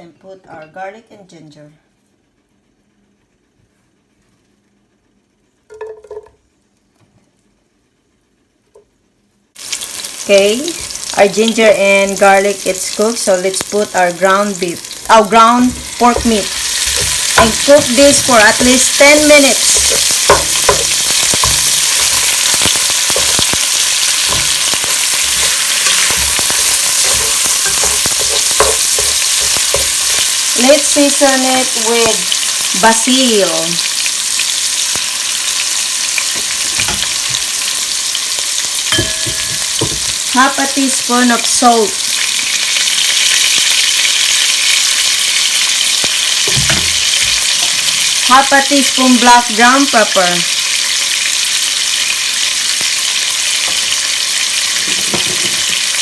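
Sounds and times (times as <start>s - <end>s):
meat sizzling in oil: 9.6s - 56.0s
utensil scraping pot: 14.8s - 30.7s.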